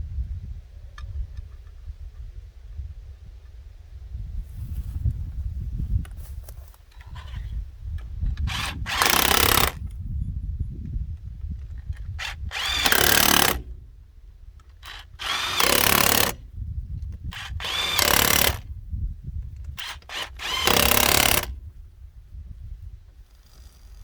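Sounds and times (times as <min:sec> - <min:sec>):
power tool whining: 0:08.4 - 0:09.8, 0:12.2 - 0:13.9, 0:14.7 - 0:16.5, 0:17.3 - 0:18.7, 0:19.7 - 0:21.7.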